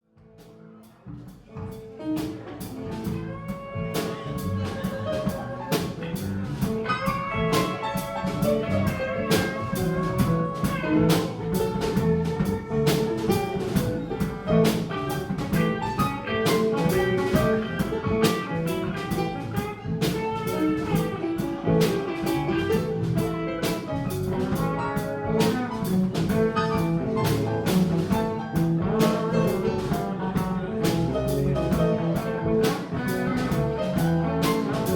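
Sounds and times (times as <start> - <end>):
live band bluesy rock groove: 0.4 - 34.9.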